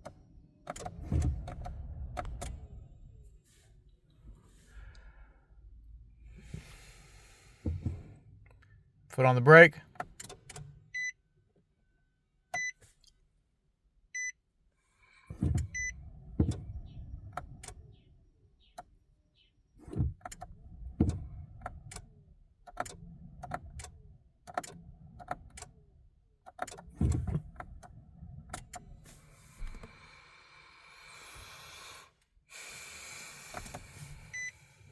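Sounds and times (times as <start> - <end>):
car cabin chime beeping: 10.9 - 11.2, 12.6 - 12.8, 15.6 - 16.0, 34.2 - 34.6.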